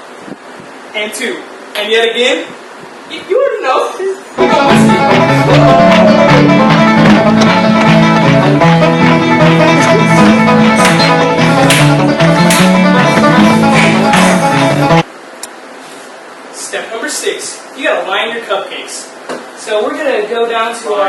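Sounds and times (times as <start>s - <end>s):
bluegrass banjo and guitar music: 4.4s - 15.0s.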